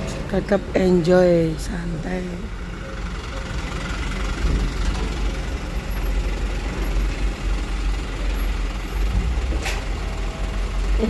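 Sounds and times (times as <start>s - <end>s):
road traffic passing: 0.0s - 11.0s.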